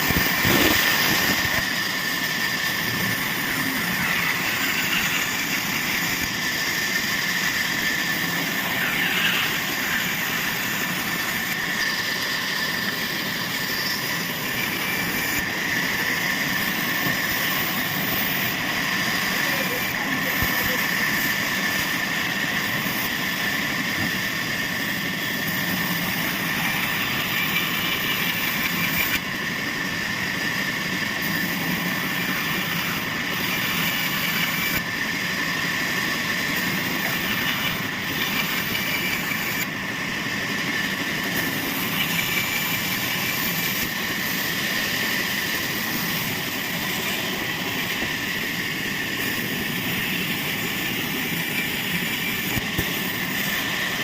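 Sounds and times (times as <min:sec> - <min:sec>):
high whine: 0:00.0 - 0:54.0
sawmill machinery running: 0:00.0 - 0:54.0.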